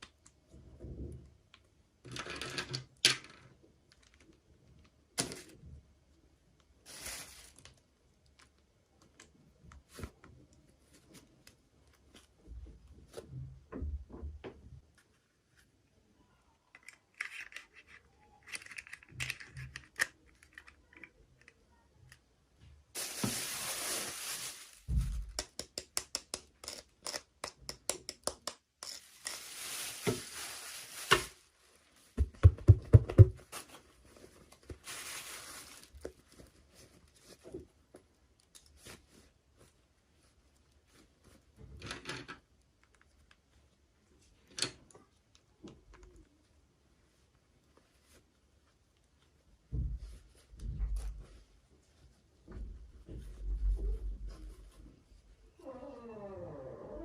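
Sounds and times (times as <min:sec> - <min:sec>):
plastic packaging crinkling: 0:06.8 - 0:07.8, 0:23.0 - 0:25.4, 0:28.9 - 0:31.8, 0:33.5 - 0:36.9
small plastic pieces clicking: 0:16.7 - 0:21.6.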